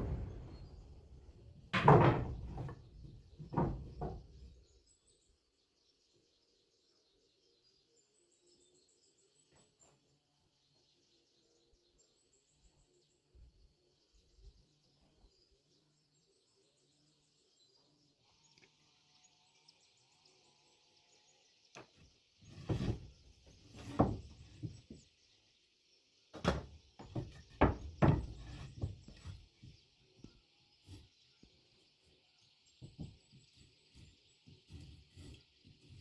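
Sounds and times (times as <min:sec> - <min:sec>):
outdoor background hiss: 0:00.0 - 0:36.0
heavy knocks on wood: 0:01.8 - 0:02.8, 0:03.4 - 0:04.3, 0:26.4 - 0:29.2.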